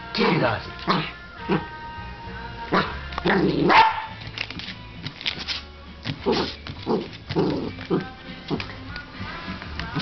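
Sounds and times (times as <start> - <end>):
background music: 0.0 - 10.0
dog barking: 2.7 - 4.2.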